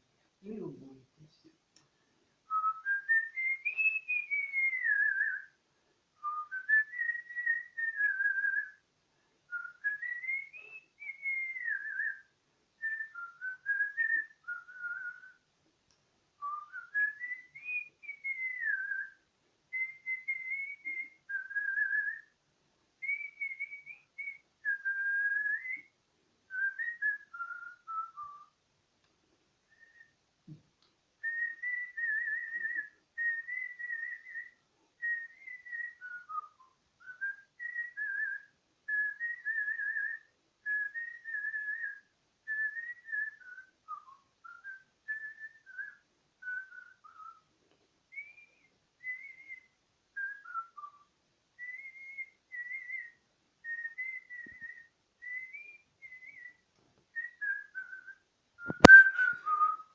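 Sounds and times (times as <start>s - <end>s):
person whistling melody: 2.5s - 5.5s, 6.2s - 8.8s, 9.5s - 12.2s, 16.4s - 22.3s, 31.2s - 47.4s, 51.6s - 56.6s, 57.2s - 59.9s.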